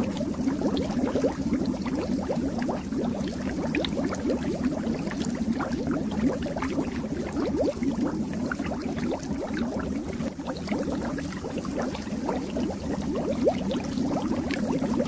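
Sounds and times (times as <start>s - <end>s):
fish tank water bubbling: 0.0s - 15.0s.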